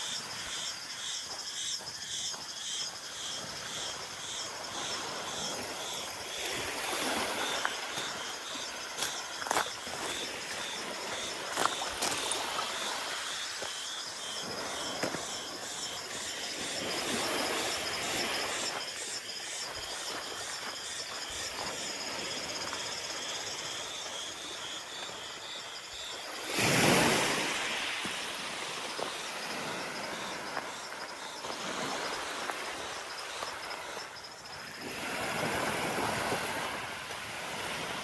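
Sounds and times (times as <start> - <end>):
insect chirping: 0.0 - 38.0
soft surf washing: 26.3 - 38.0.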